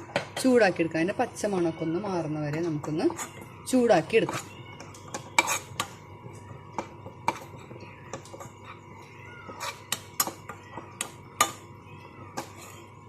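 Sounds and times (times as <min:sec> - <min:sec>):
spoon stirring dry powder: 0:01.8 - 0:13.0
metal spoon tapping pan: 0:09.5 - 0:11.7.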